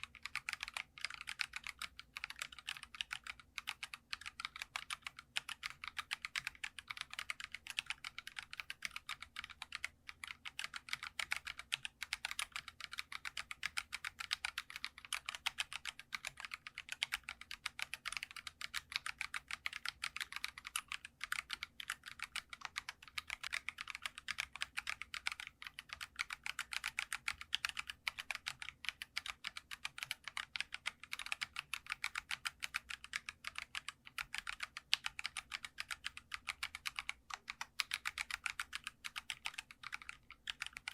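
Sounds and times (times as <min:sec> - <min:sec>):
fast typing on mechanical keyboard: 0:00.0 - 0:40.9.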